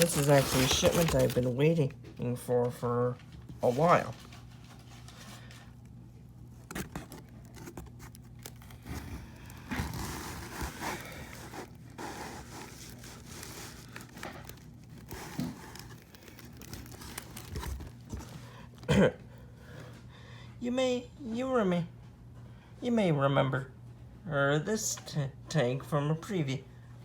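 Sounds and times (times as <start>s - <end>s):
packing material crinkling: 0.0s - 1.8s, 6.5s - 18.9s
small knocks and scrapes: 6.6s - 18.5s.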